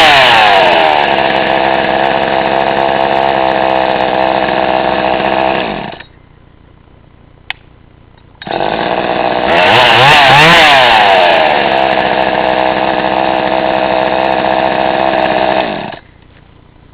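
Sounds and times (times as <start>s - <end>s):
chainsaw engine revving and idling: 0.0s - 6.0s, 8.4s - 16.1s
click: 7.5s - 8.4s.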